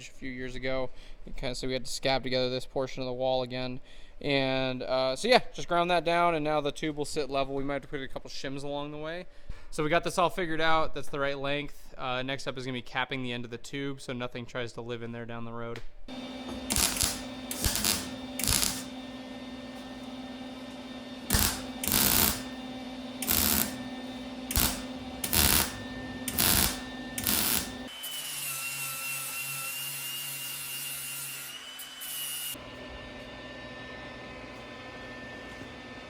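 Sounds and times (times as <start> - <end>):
power tool bursts on steel tubing: 16.1 - 19.0, 21.3 - 22.6, 23.2 - 28.0
tool running with high whine: 16.1 - 36.0.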